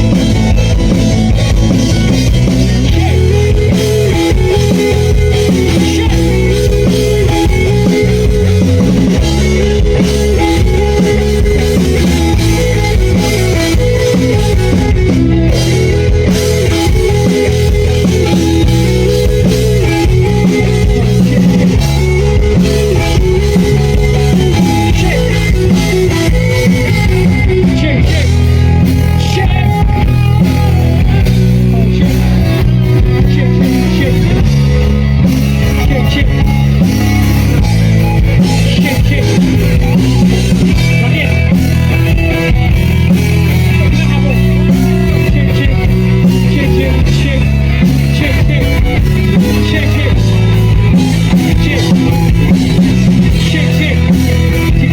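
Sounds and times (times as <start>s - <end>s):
rock band playing: 0.0s - 54.9s.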